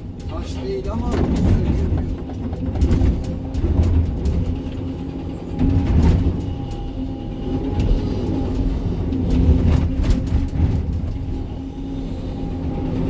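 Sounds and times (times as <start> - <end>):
excavator diesel engine running: 0.0 - 11.7.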